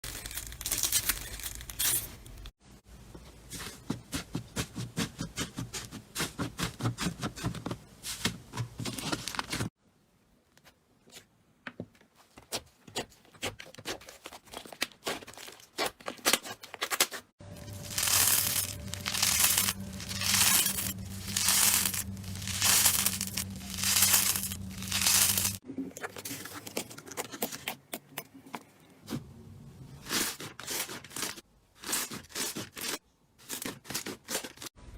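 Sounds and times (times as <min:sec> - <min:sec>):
low steady hum: 0:17.4 - 0:25.6
slime squishing: 0:17.5 - 0:25.6
slime crackling and popping: 0:17.6 - 0:25.6.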